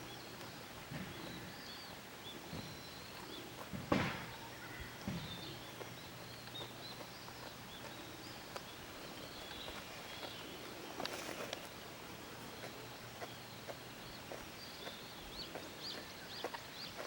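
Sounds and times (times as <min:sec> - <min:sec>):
small birds chirping: 0:00.0 - 0:17.0
brief rustling: 0:10.7 - 0:11.7.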